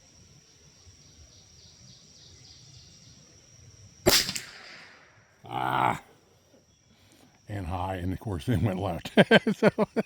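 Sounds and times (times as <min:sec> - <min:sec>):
faint high-pitched hum: 0:00.0 - 0:10.0
rifle shot: 0:04.1 - 0:05.1.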